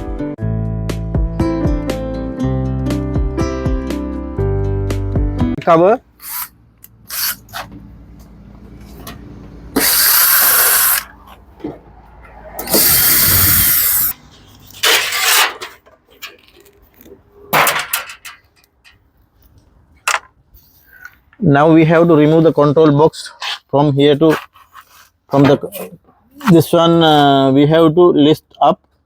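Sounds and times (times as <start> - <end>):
power screwdriver whirring: 7.1 - 7.6, 9.8 - 11.1, 12.6 - 14.1.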